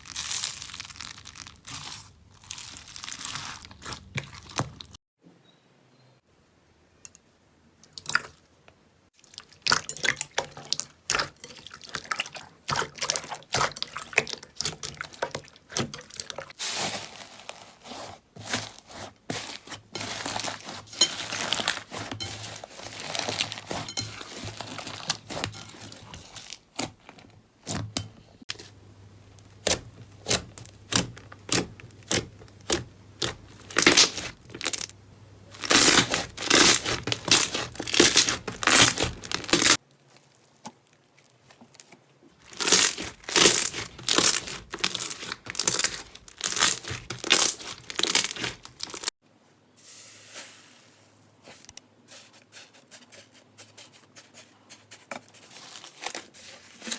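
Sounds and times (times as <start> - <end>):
slime squeezed popping and crackling: 0.0 - 4.8, 29.6 - 34.9, 35.6 - 39.8, 42.5 - 49.1.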